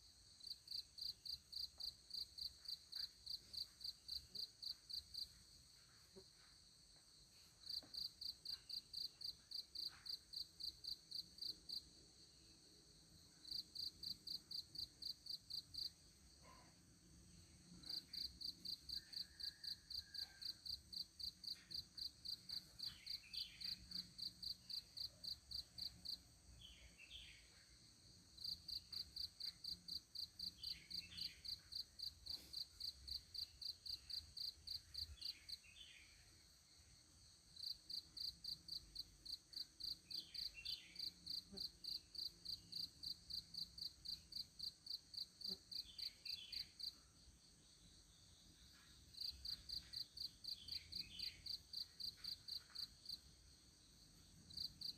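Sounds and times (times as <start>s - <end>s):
insect chirping: 0.0s - 54.9s
faint bird chirps: 17.4s - 20.8s, 21.4s - 27.8s, 45.4s - 47.1s.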